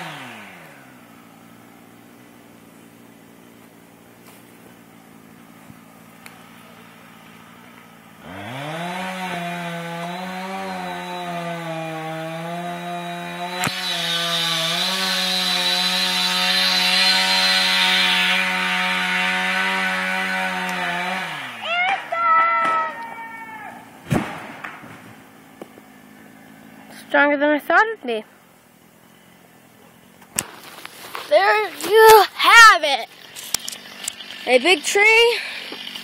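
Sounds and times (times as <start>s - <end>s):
chainsaw cutting into tree: 0.0s - 23.0s, 30.4s - 36.0s.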